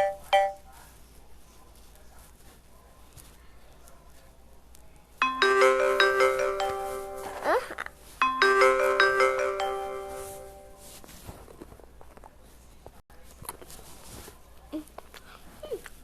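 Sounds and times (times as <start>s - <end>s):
marimba-like ringtone melody: 0.0s - 0.6s, 5.2s - 7.6s, 8.2s - 10.8s.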